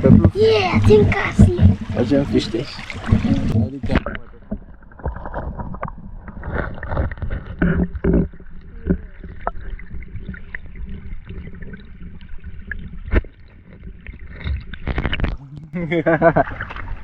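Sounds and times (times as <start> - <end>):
river water sloshing: 0.0 - 8.6, 15.8 - 17.0.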